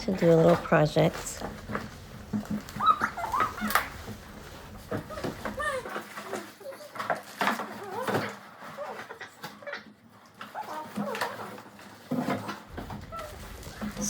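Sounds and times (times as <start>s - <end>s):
toddler babbling and squealing: 5.1s - 7.0s.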